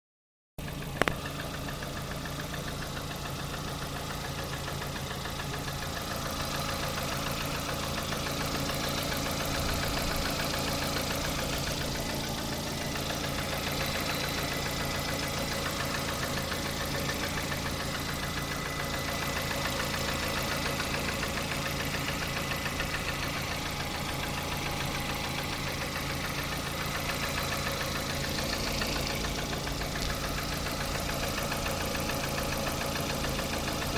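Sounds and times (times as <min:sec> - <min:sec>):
car engine idling: 0:00.6 - 0:33.9
rapid even engine knocking: 0:00.6 - 0:33.9.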